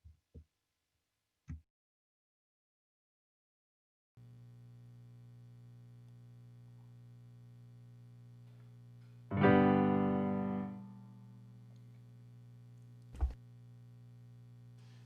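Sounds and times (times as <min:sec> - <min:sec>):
low electrical hum: 0:04.2 - 0:15.0
piano chord: 0:09.3 - 0:11.4.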